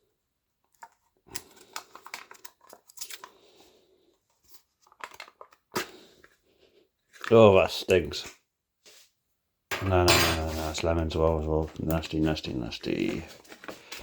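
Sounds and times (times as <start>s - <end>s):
packaging crinkling and rustling: 0.7s - 3.5s, 4.4s - 6.4s, 13.0s - 14.0s.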